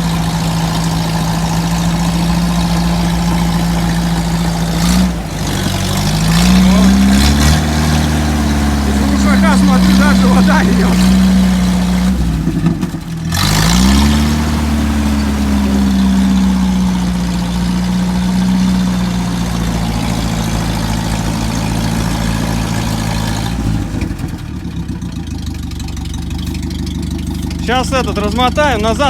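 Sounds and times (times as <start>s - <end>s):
engine revving with open exhaust: 0.0s - 29.0s
water pushed from exhaust pipe: 11.0s - 27.7s.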